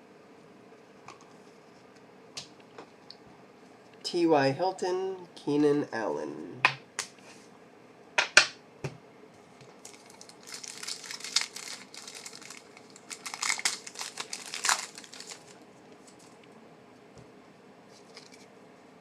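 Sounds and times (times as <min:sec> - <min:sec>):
foil wrapper crinkling: 0:09.7 - 0:16.4, 0:18.0 - 0:18.5.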